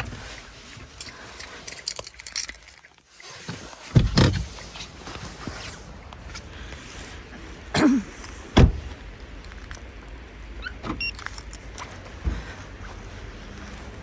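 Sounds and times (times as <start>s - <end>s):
keys jingling: 0.8s - 3.0s, 4.8s - 5.7s, 8.2s - 12.2s
heavy thud: 8.6s - 9.0s.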